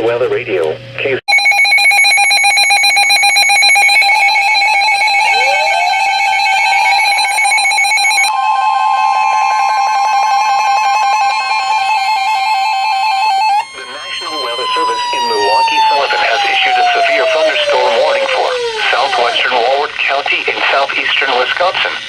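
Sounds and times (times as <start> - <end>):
rapidly pulsing alert tone: 1.3 - 19.9
steady higher tone: 1.3 - 20.0
rising tone: 3.6 - 19.9.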